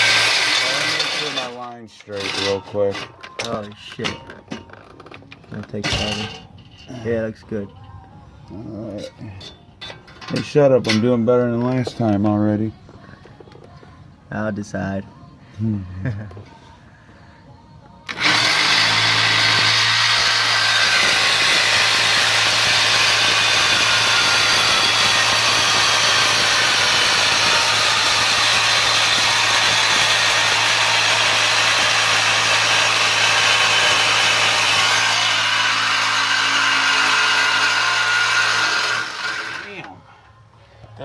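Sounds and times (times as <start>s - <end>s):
reciprocating saw cutting metal pipe: 0.0s - 3.3s, 18.1s - 39.9s.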